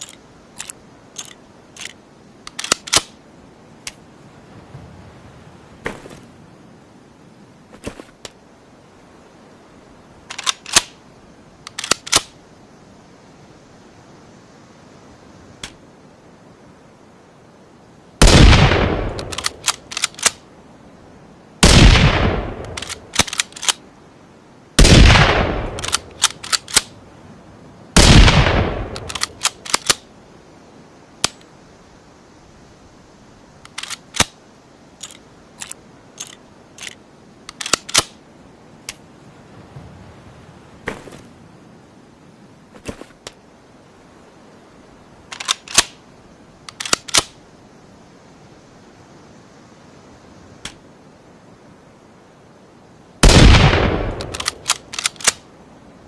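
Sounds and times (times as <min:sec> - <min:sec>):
sharp clicks: 0:00.0 - 0:03.2, 0:19.0 - 0:20.4, 0:25.6 - 0:26.9, 0:28.8 - 0:30.0, 0:33.6 - 0:34.4, 0:35.0 - 0:38.2, 0:46.6 - 0:47.4, 0:53.2 - 0:55.4
rifle shots: 0:18.2 - 0:20.3, 0:21.6 - 0:23.5, 0:24.8 - 0:26.9, 0:28.0 - 0:30.0, 0:53.2 - 0:55.4.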